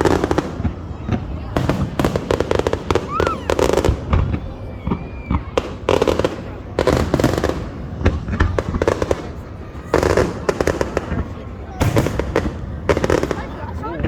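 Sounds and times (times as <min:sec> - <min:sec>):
fireworks bangs and crackles: 0:00.0 - 0:14.0.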